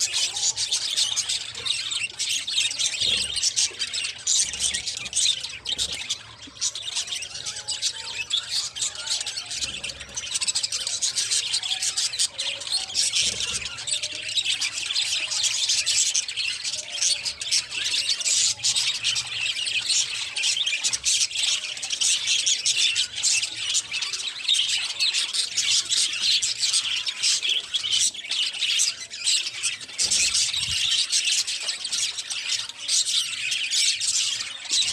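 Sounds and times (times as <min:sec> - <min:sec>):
budgerigars chattering and chirping: 0:00.0 - 0:34.9.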